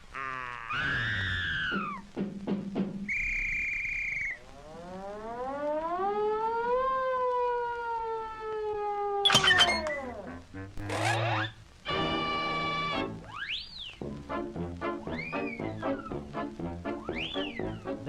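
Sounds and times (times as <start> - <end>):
siren-like wail: 4.4 - 10.3
short high beep: 9.3 - 10.0.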